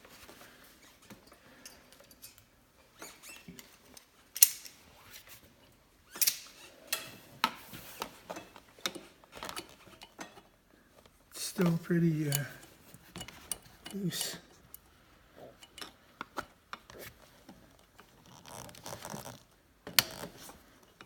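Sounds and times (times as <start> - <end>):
locking pliers clicking on metal: 4.4 - 4.8, 6.1 - 7.1, 12.2 - 12.6.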